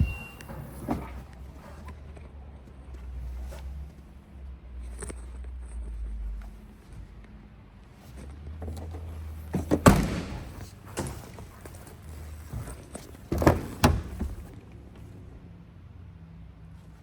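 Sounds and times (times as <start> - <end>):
car door shutting with thud: 9.6 - 10.5.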